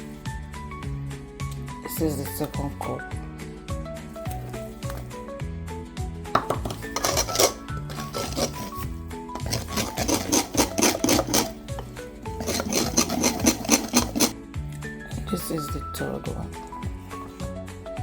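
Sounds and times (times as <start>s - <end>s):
background music: 0.0s - 18.0s
batter stirred in mixing bowl: 6.4s - 14.4s.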